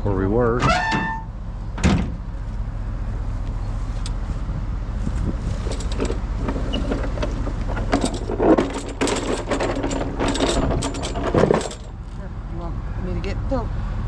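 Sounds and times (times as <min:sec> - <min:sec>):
clunks and rattles: 0:00.0 - 0:02.6, 0:05.0 - 0:12.2
vehicle engine idling: 0:00.0 - 0:14.0.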